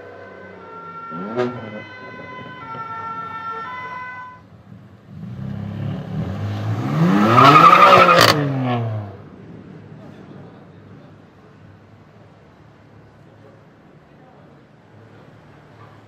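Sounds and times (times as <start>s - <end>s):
car engine revving past: 5.0s - 9.2s.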